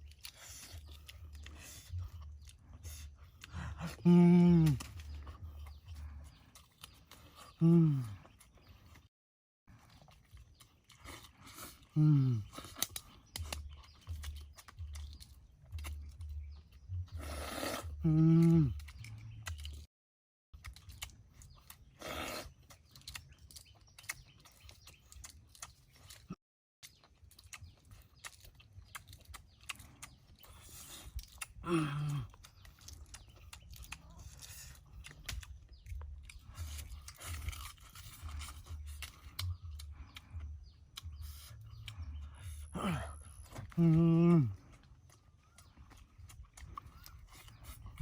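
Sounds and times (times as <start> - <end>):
person chewing and crunching food: 0.0 - 9.1, 9.7 - 19.9, 20.6 - 48.0
person humming low mm: 3.5 - 5.2, 7.6 - 8.2, 12.0 - 12.5, 17.1 - 19.3, 31.6 - 32.4, 39.6 - 44.7.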